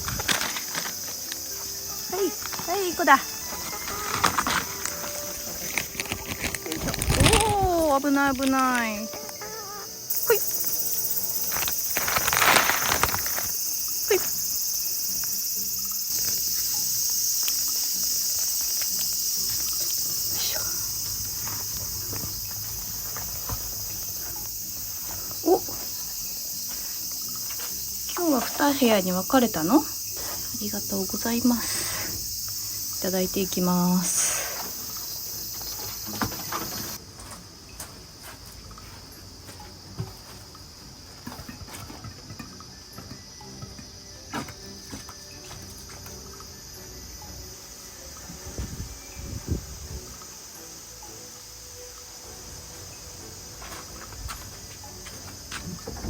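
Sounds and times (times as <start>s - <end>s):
insects chirping shrilly: 0.0s - 56.0s
faint clicks and rustles: 3.4s - 9.4s.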